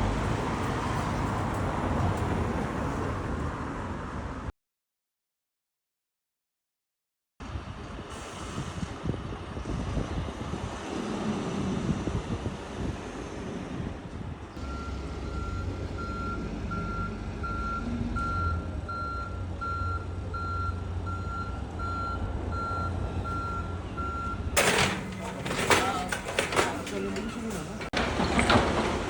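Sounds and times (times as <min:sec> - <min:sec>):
heavy machine engine rumbling: 0:07.5 - 0:29.0
reversing alarm beeping: 0:14.6 - 0:25.1.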